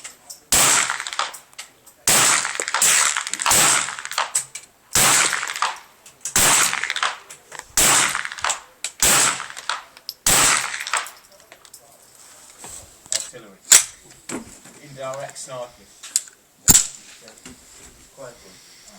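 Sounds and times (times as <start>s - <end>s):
rifle shots with echo: 0.0s - 11.2s, 16.7s - 17.0s.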